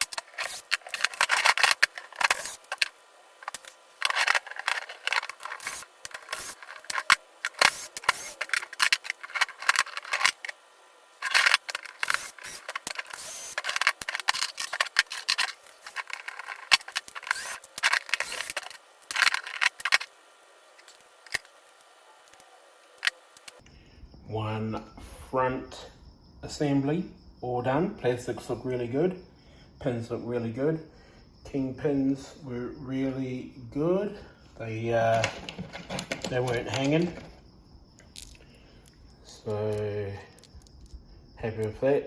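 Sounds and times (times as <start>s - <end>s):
small tools and parts clicking: 0.0s - 10.6s, 11.2s - 23.6s, 35.0s - 37.4s, 38.0s - 41.0s.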